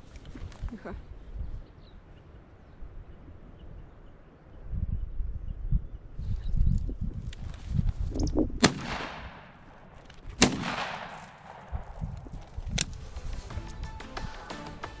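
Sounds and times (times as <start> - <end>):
shotgun shots echoing: 8.6 - 12.7
sharp crack: 8.6 - 13.5.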